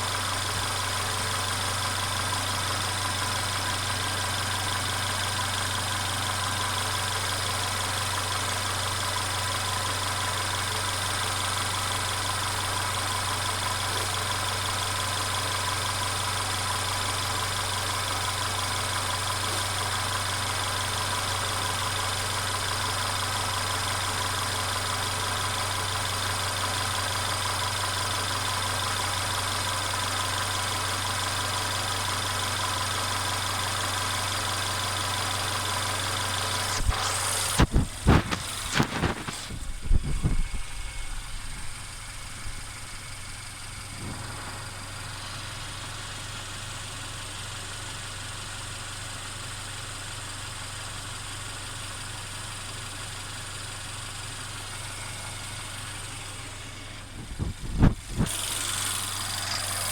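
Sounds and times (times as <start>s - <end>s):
car engine idling: 0.0s - 59.9s
continuous rattle: 35.9s - 46.0s, 54.9s - 59.9s.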